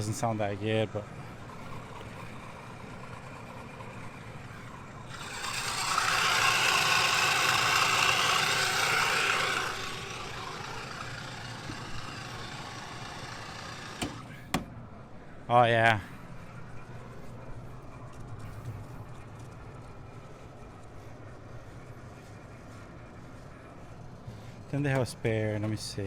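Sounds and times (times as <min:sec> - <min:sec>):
blower running with rough belt: 0:00.0 - 0:15.3.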